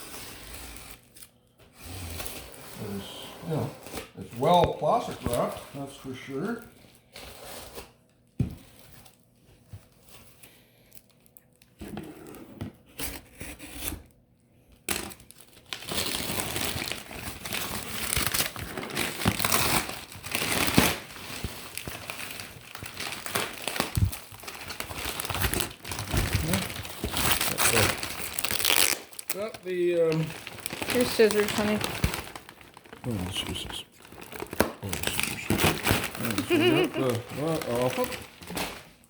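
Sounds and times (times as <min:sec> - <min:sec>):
plastic wrapping crinkling and tearing: 0:02.0 - 0:06.8, 0:14.9 - 0:39.0.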